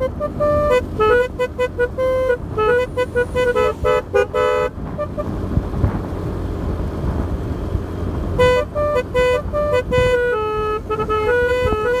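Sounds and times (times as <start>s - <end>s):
melody horn playing a tune: 0.0s - 5.3s, 8.4s - 12.0s.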